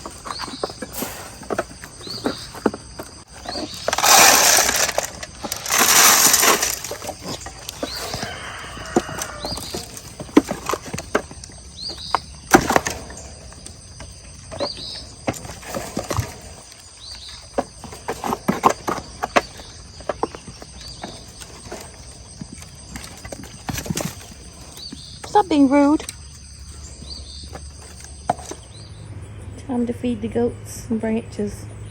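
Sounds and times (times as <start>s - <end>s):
knocks and clatters: 0.0s - 25.4s.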